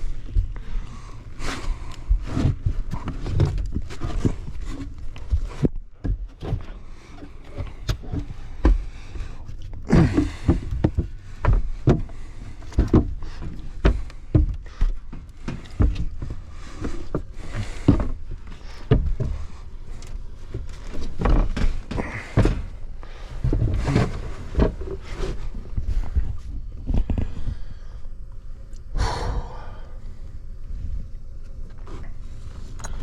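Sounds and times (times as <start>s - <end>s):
rustling handling noises: 0.0s - 27.6s
knocks and clunks: 9.9s - 22.8s.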